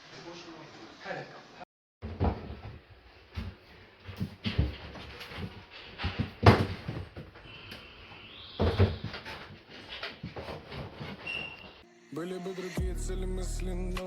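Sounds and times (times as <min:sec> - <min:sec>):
metal sliding squeak: 0:07.5 - 0:11.9.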